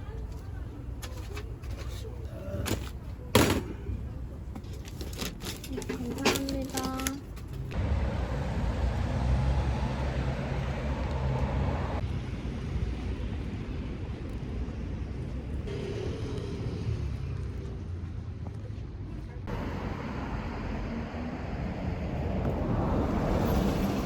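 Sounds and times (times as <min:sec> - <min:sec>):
vehicle road and engine rumble: 0:00.0 - 0:24.0.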